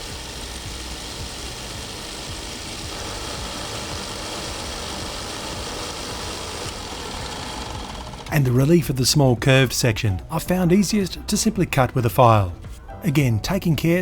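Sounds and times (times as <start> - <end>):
belt sander grinding steel: 0.0 - 9.3.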